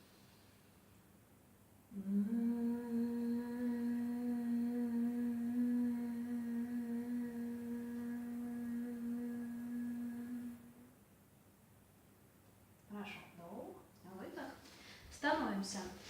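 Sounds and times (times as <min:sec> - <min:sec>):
person humming a note: 0:01.9 - 0:10.9.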